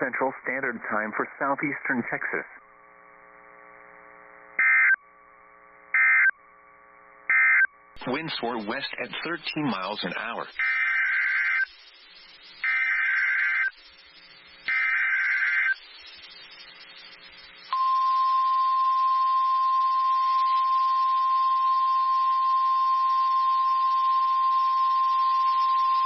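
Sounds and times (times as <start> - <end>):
digital data bursts: 7.3 - 24.0
steady warning alarm tone: 17.7 - 26.0.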